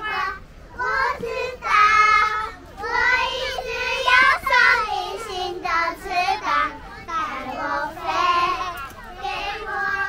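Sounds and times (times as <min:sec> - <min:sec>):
children singing: 0:00.0 - 0:10.0.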